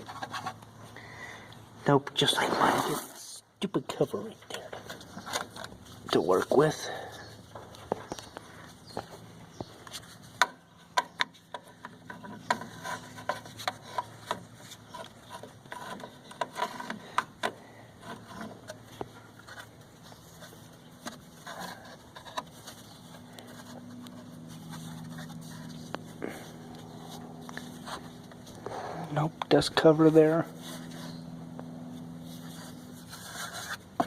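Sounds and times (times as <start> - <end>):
objects knocking and scraping: 7.6 - 19.8.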